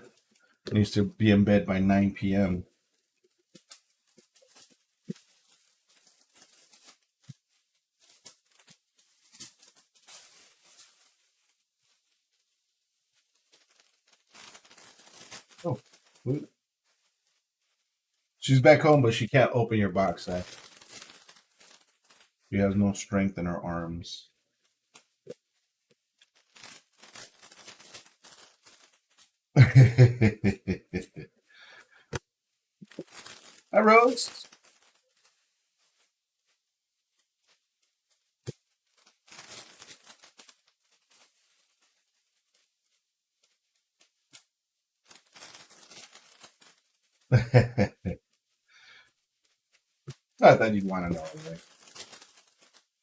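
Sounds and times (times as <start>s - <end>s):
packaging crinkling and tearing: 3.4s - 12.5s, 13.2s - 16.4s, 20.0s - 22.4s, 26.2s - 29.9s, 32.8s - 35.4s, 38.4s - 42.7s, 44.1s - 47.9s, 48.8s - 53.0s
loud laughter: 29.6s - 31.2s, 47.3s - 48.2s.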